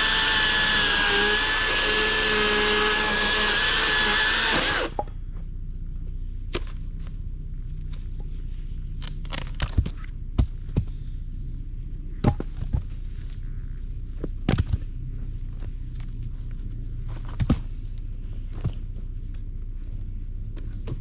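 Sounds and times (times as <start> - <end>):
low rumble: 4.4 - 21.0.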